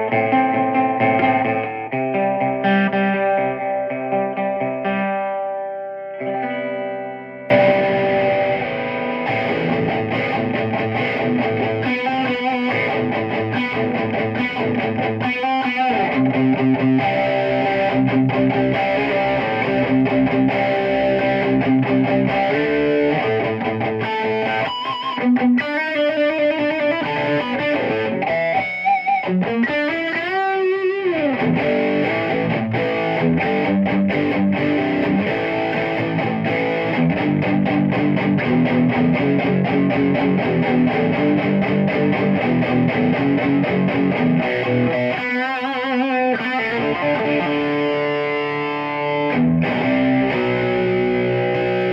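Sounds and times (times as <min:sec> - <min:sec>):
distorted electric guitar riff: 0:00.0 - 0:51.9.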